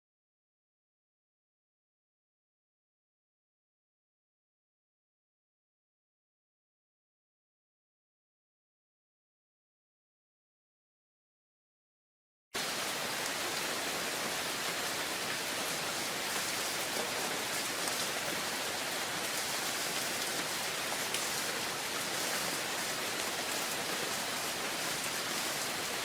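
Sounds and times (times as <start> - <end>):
steady rain: 12.6 - 26.0.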